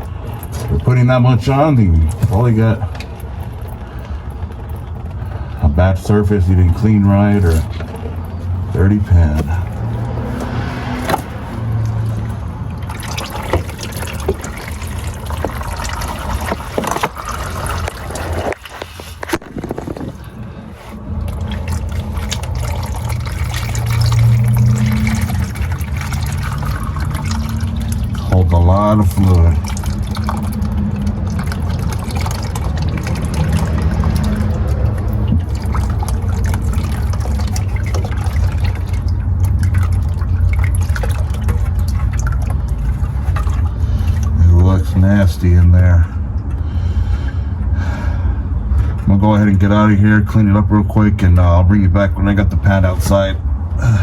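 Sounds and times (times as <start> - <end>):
drips and splats: 6.5 - 45.0
fluid trickling into pan: 11.6 - 19.9, 21.1 - 44.4.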